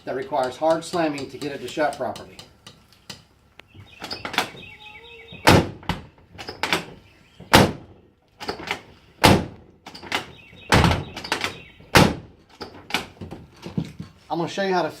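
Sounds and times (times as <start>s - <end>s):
car door slamming: 5.4s - 6.1s, 7.5s - 7.9s, 9.2s - 9.6s, 10.7s - 11.2s, 11.9s - 12.3s.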